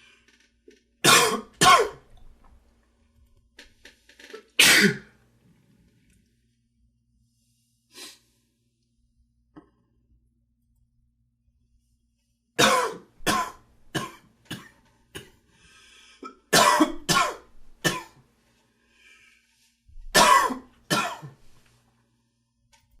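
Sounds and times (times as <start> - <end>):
man coughing: 1.0 - 2.0, 4.6 - 5.1, 12.6 - 15.4, 16.2 - 18.2, 20.2 - 21.4.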